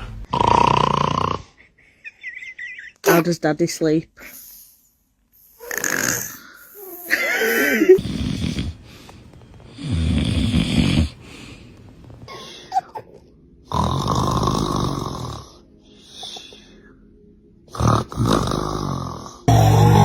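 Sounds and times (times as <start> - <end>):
person snoring: 0.3 - 1.6, 5.4 - 9.1, 9.7 - 11.6, 13.7 - 15.6, 17.7 - 20.0.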